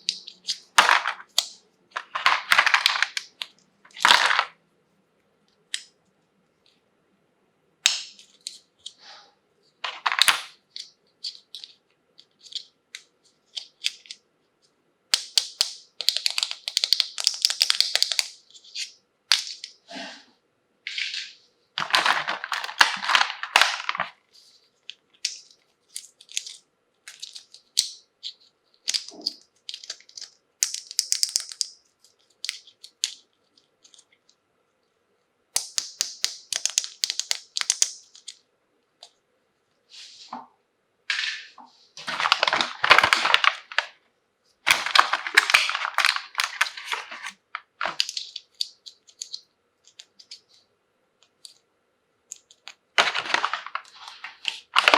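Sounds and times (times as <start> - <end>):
plastic toy pieces handled: 0.0 - 4.6, 9.8 - 14.2, 15.1 - 19.8, 20.9 - 34.4, 35.5 - 38.4, 41.1 - 44.0, 44.6 - 50.6, 51.2 - 51.6, 52.3 - 54.9
plastic packaging crinkling: 21.8 - 27.8, 42.0 - 44.0, 44.6 - 50.5, 52.9 - 54.9.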